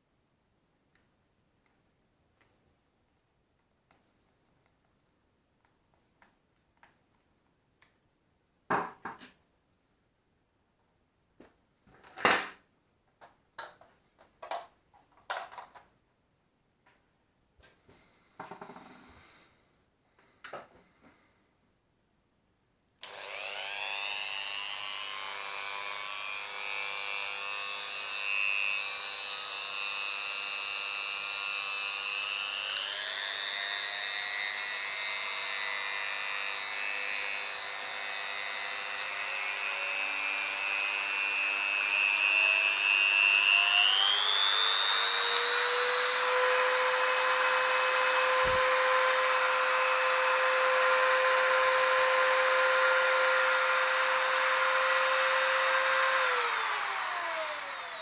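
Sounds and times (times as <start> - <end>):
rotary tool motor whining: 23.0 - 58.0.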